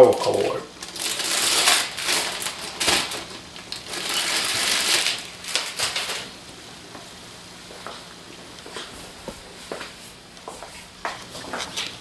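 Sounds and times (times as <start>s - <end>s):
packaging rustling and crinkling: 0.1s - 6.4s.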